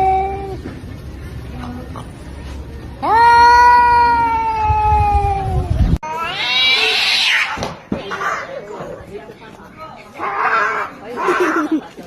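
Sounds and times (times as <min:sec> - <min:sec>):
cat yowling: 0:03.0 - 0:07.6.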